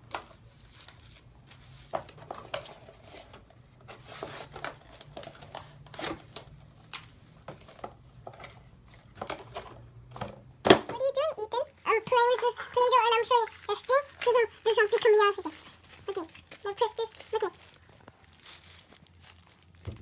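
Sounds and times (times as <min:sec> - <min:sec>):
packaging crinkling: 0:12.2 - 0:20.0.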